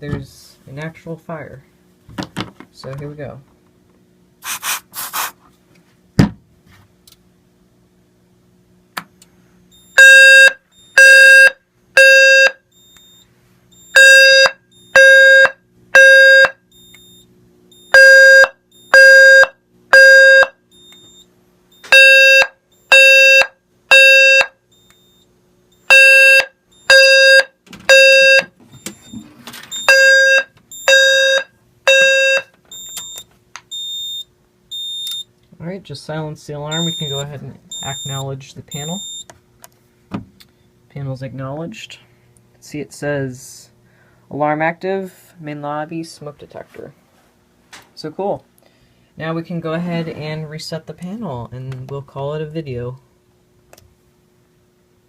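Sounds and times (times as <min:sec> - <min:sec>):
fire alarm low buzzing tones: 0:09.7 - 0:35.4, 0:36.7 - 0:39.3
faint high beeping: 0:36.7 - 0:39.3.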